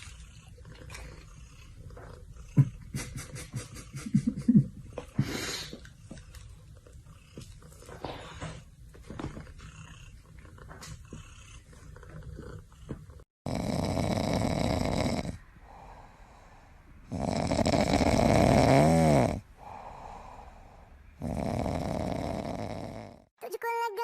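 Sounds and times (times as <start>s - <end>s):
pet snoring: 9.4s - 23.3s.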